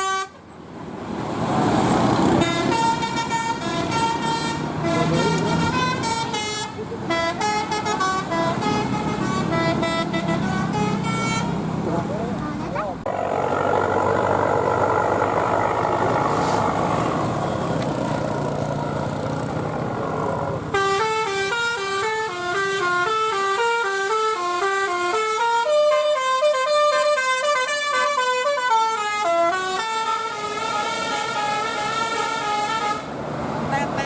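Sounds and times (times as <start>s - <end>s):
musical bus horn melody: 0.0s - 0.4s, 2.4s - 11.6s, 20.7s - 33.2s
bus engine: 0.0s - 34.0s.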